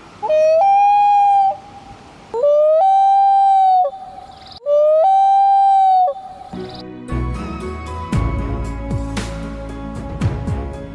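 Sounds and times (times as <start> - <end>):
loon wailing call: 0.2 - 6.6.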